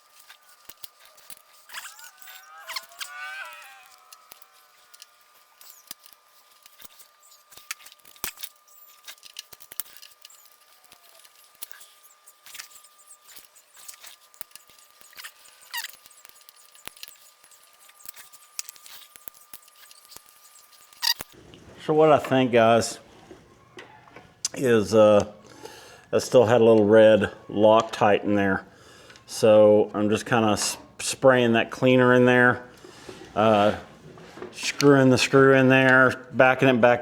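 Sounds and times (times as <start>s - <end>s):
small metal parts clicking: 0.0s - 21.4s
brief wavering squeak: 0.3s - 5.0s.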